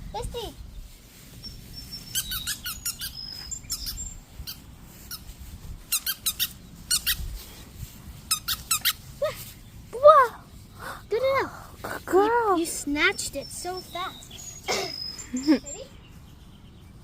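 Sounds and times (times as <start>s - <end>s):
squeaky toy squeaking: 2.0s - 5.3s, 5.9s - 7.3s, 8.3s - 9.0s.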